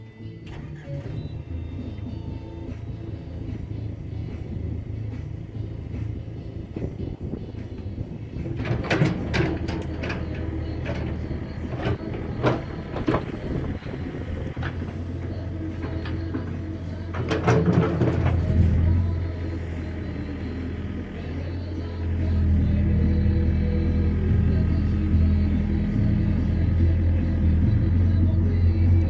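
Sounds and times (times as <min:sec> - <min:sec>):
sawmill engine humming: 0:00.0 - 0:29.0
knocking and clatter: 0:08.4 - 0:13.5.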